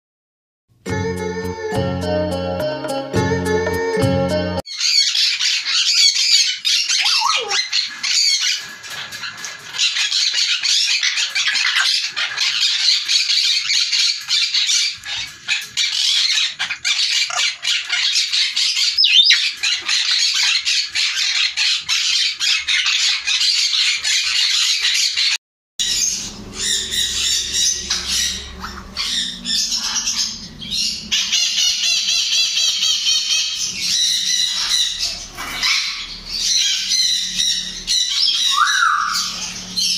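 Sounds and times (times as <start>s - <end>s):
parrots squawking and chattering: 4.6s - 39.9s
low hum: 25.8s - 32.0s.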